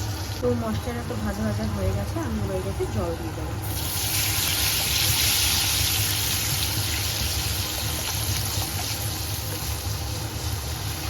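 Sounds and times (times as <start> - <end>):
water sizzling in hot oil: 3.6 - 11.0.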